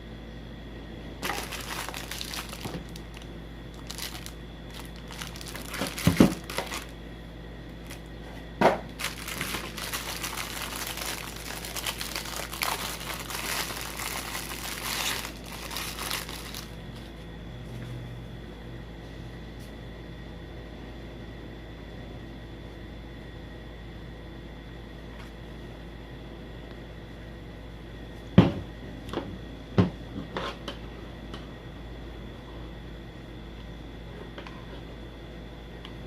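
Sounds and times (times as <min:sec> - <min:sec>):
packaging crinkling: 0:01.2 - 0:07.0, 0:07.7 - 0:08.1, 0:08.9 - 0:17.1.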